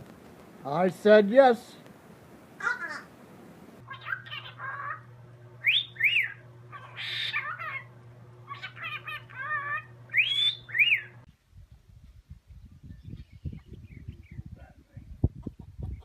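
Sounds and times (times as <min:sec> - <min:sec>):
steady low hum: 0:00.0 - 0:16.0
bird whistling: 0:05.6 - 0:07.9, 0:08.5 - 0:11.2.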